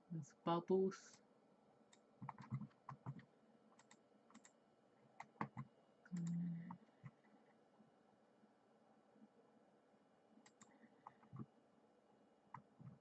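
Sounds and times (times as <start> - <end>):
keyboard and mouse clicks: 1.9 - 4.6, 5.2 - 7.3, 10.4 - 11.5, 12.5 - 13.0.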